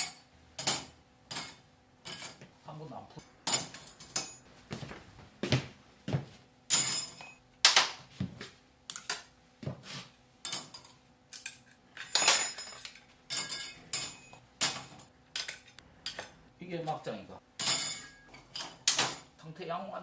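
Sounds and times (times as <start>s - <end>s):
metal tools clinking: 0.0s - 2.4s, 3.1s - 4.5s, 6.7s - 7.4s, 10.4s - 16.4s, 17.6s - 19.3s.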